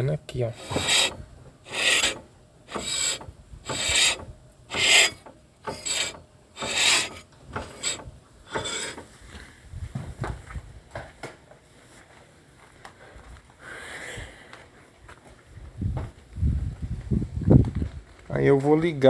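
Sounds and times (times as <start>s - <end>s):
brake disc scraping against pads: 0.5s - 9.2s.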